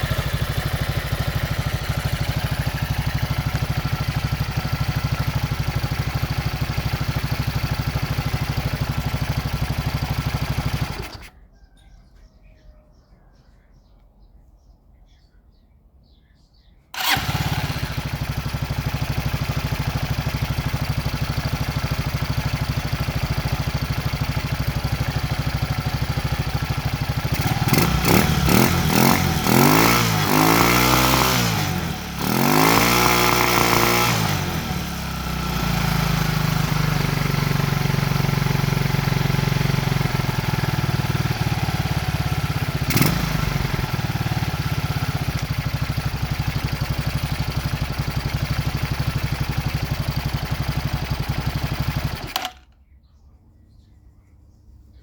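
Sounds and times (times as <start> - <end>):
small engine idling and revving: 0.0 - 11.4, 17.0 - 52.8
sharp click: 52.3 - 52.8.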